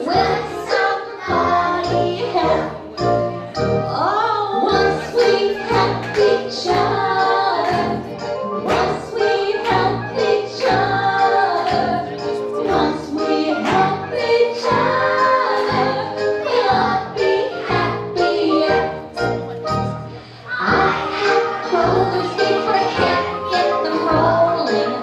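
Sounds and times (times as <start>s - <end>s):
musical accompaniment: 0.0s - 25.0s
group singing in chorus: 5.0s - 19.0s.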